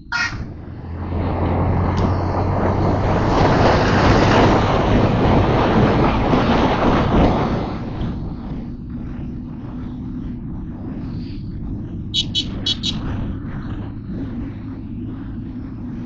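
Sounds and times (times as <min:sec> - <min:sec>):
low engine hum: 0:00.0 - 0:16.0
motorcycle road noise: 0:00.0 - 0:16.0
wind rushing over microphone: 0:00.0 - 0:16.0.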